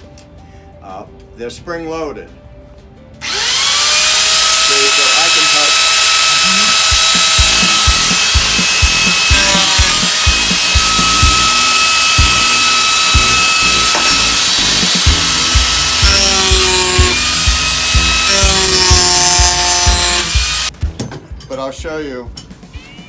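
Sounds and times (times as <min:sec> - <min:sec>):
power carving tool whining: 0:03.2 - 0:20.7.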